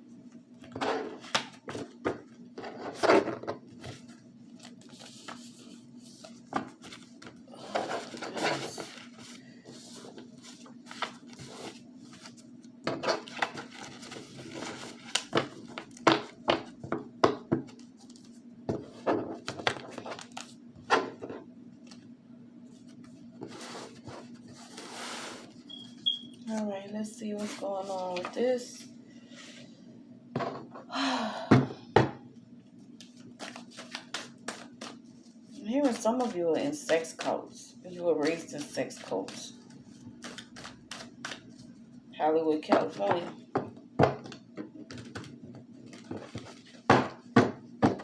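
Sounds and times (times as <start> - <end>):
faint steady hum: 0.0 - 48.0
cards shuffling: 33.0 - 37.3, 40.1 - 41.7.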